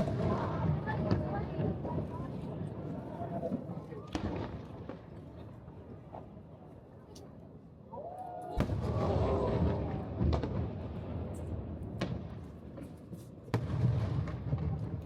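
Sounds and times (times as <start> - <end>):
fireworks bangs: 0.0 - 5.4, 8.6 - 15.0
rumble of distant explosions: 0.0 - 5.4, 8.6 - 12.8, 13.5 - 15.0.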